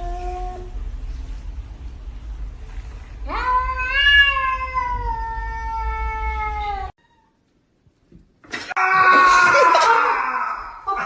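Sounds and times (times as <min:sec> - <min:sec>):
cat yowling: 0:03.3 - 0:07.4.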